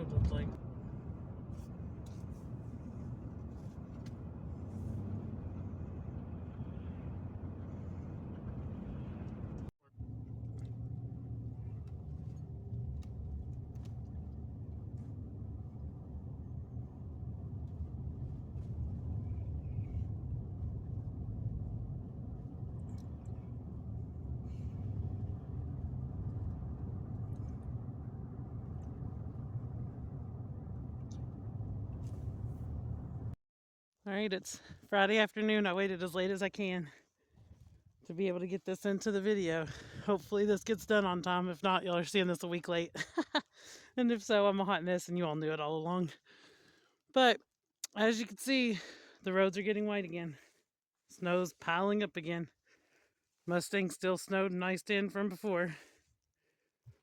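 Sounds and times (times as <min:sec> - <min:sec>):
car engine and road rumble: 0:00.0 - 0:33.4.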